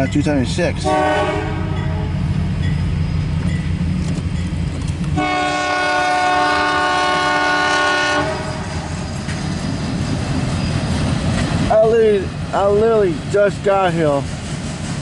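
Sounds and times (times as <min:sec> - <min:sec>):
diesel locomotive rumbling: 0:00.0 - 0:15.0
train air horn chord: 0:00.8 - 0:02.2, 0:05.2 - 0:08.7.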